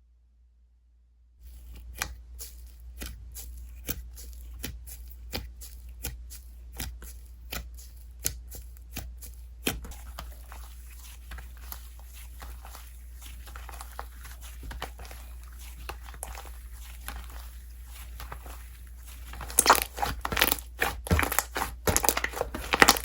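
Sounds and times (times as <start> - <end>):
slime crackle: 9.8 - 23.0.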